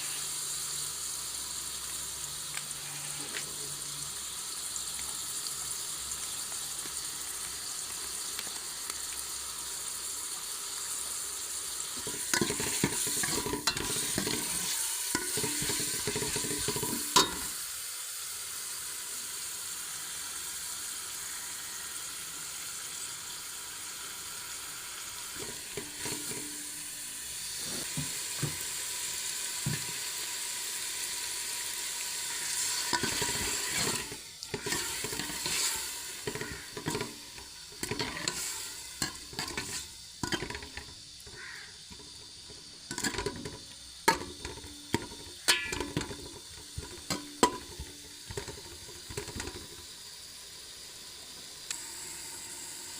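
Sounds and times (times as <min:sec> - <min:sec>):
food sizzling in a pan: 0:00.0 - 0:52.9
utensil stirring and scraping: 0:32.9 - 0:37.2, 0:37.8 - 0:41.4.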